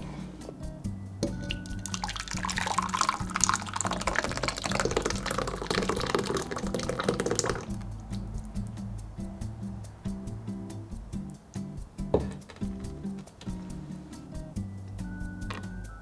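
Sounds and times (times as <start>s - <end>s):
background music: 0.0s - 16.0s
water running: 1.3s - 8.6s.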